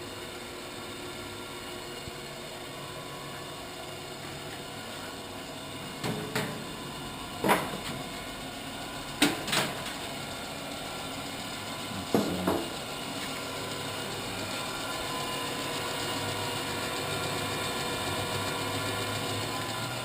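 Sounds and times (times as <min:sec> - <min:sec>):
grinder humming: 0:00.0 - 0:20.0
sharp knocks and clunks: 0:12.0 - 0:12.8.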